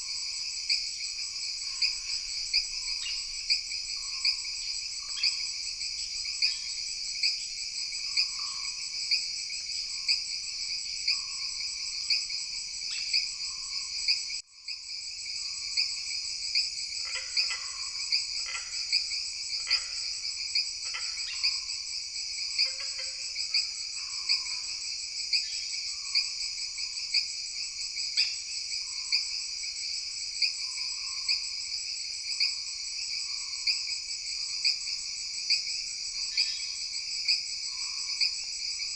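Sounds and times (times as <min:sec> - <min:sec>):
frogs croaking: 0:00.0 - 0:38.9
insects trilling: 0:00.0 - 0:38.9.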